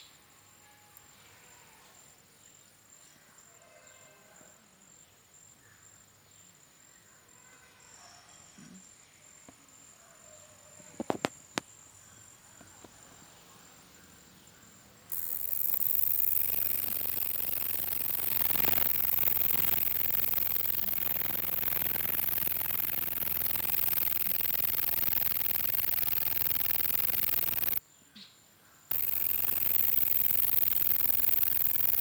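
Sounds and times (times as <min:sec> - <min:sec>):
insect trilling: 0:15.1 - 0:27.8, 0:28.9 - 0:32.0
loud even hiss: 0:15.1 - 0:27.8
sharp clicks: 0:15.1 - 0:27.8, 0:28.9 - 0:32.0.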